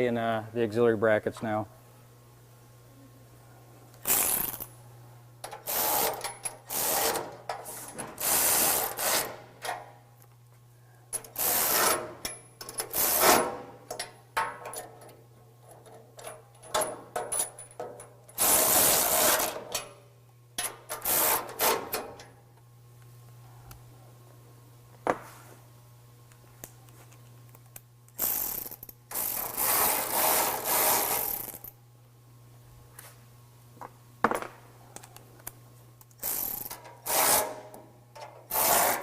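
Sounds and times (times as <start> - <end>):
ratchet wrench clicking: 28.1 - 31.7, 36.2 - 37.6, 38.2 - 39.0.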